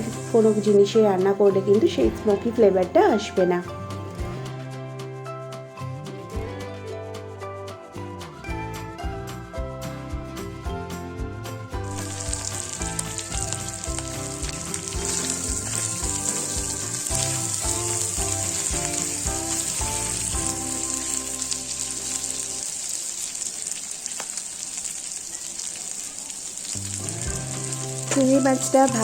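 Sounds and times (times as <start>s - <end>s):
prawns sizzling in oil: 0.0s - 1.3s, 11.8s - 29.0s
background music with a beat: 3.7s - 21.7s.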